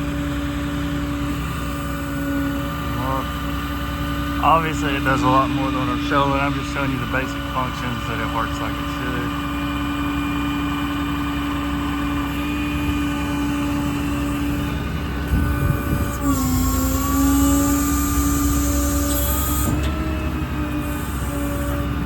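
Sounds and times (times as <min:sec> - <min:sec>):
diesel engine running: 0:00.0 - 0:22.0
hydraulic pump whine: 0:00.0 - 0:22.0.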